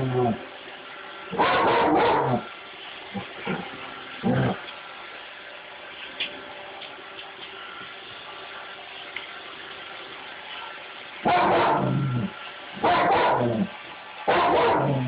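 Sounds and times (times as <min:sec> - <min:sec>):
dog barking: 0:01.4 - 0:02.5, 0:11.3 - 0:12.1, 0:12.8 - 0:13.7, 0:14.3 - 0:15.0.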